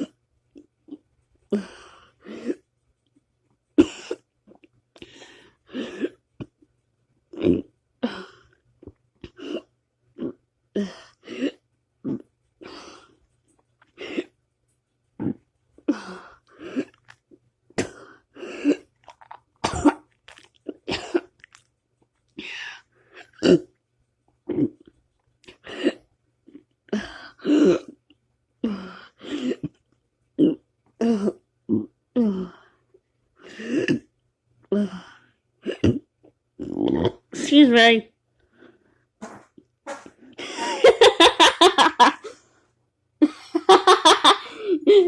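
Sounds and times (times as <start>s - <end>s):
person burping: 7.3s - 7.7s, 9.3s - 12.3s, 17.8s - 21.5s, 23.3s - 23.7s, 24.5s - 24.9s, 30.4s - 32.4s, 35.6s - 37.2s.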